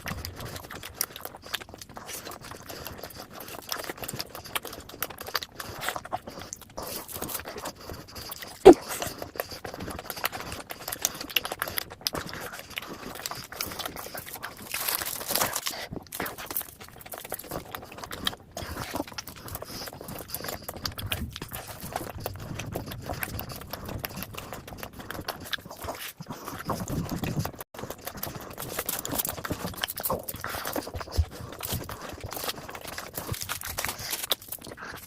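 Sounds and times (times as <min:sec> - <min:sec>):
chewing and wet mouth clicks: 0:00.0 - 0:35.0.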